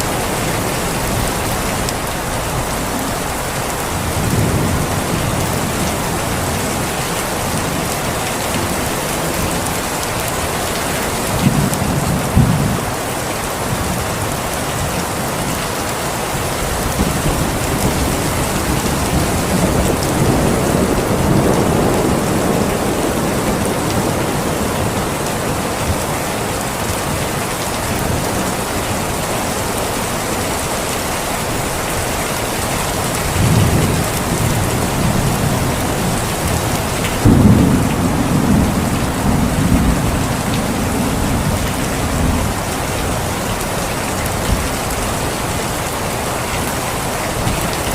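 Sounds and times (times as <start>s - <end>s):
heavy rain: 0.0s - 47.9s
distant thunder: 33.0s - 43.2s.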